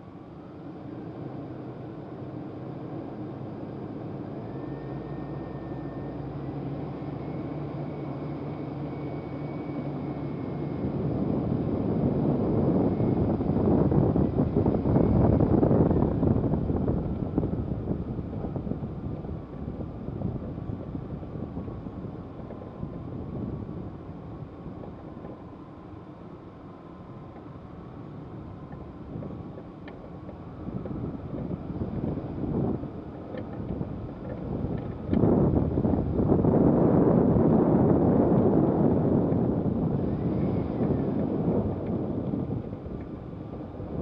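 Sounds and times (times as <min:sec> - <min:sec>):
vehicle engine humming: 0:00.0 - 0:44.0.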